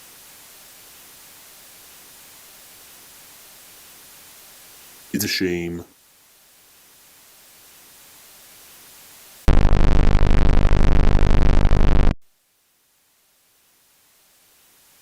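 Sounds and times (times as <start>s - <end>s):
faint hiss: 0.0s - 9.5s, 12.3s - 15.0s
distorted pulsing bass buzz: 9.5s - 12.2s.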